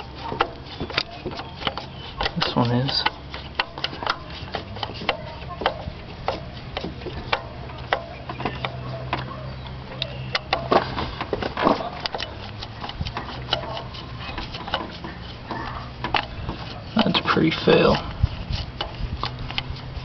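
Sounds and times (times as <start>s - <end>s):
hand tool turning screws: 0.0s - 9.3s, 10.1s - 20.0s
steady low hum: 0.0s - 20.0s.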